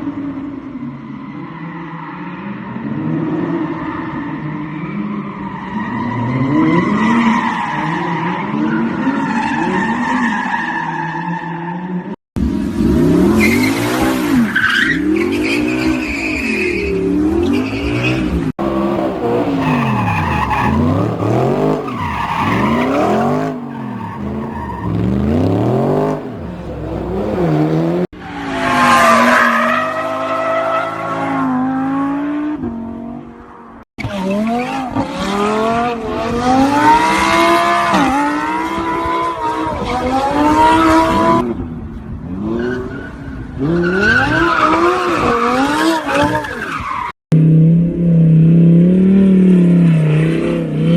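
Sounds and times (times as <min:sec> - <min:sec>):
car engine revving hard: 0:17.9 - 0:28.1
tyres squealing: 0:18.6 - 0:26.8.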